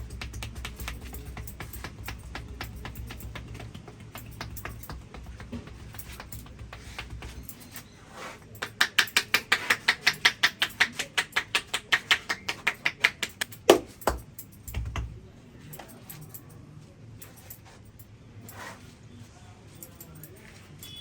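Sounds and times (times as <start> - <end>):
hands tapping on head: 0.0 - 7.8, 8.6 - 15.2.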